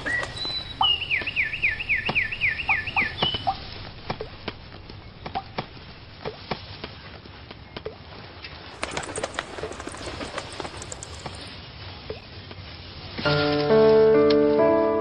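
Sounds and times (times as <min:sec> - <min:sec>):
bird whistling falling notes: 0:00.0 - 0:03.6
short bird chips and clicks: 0:08.7 - 0:12.2.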